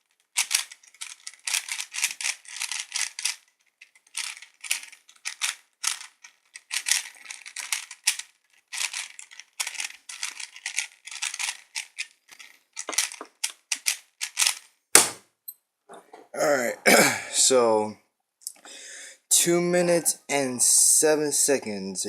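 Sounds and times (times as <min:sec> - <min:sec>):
puzzle cube clacking: 0:00.1 - 0:15.2.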